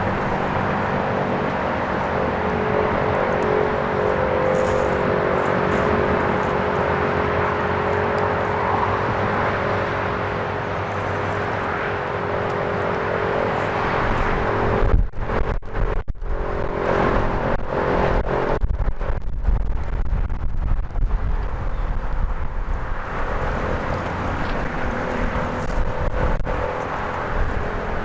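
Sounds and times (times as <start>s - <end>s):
warning siren steady tone: 0.0s - 18.6s
wind buffeting microphone: 0.0s - 28.0s.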